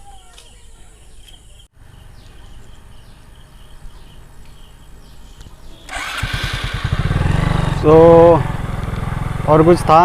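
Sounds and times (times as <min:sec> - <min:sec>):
insects droning: 0:00.0 - 0:06.9.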